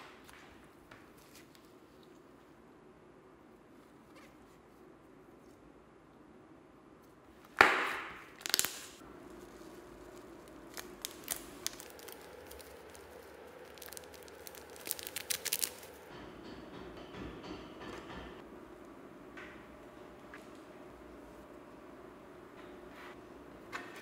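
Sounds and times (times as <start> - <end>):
slime popping: 8.3 - 16.0
slime clicking and crackling: 8.4 - 16.0.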